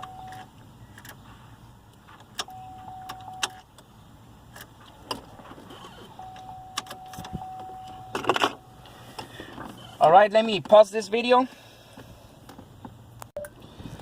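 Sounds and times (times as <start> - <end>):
electronic beep tone: 2.5 - 3.4, 6.2 - 8.8.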